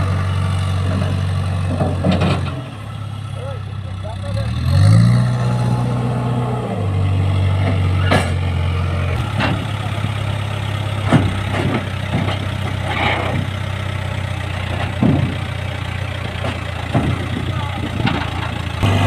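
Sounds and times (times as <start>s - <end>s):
diesel engine idling: 0.0s - 19.0s
short knocks: 16.4s - 18.6s.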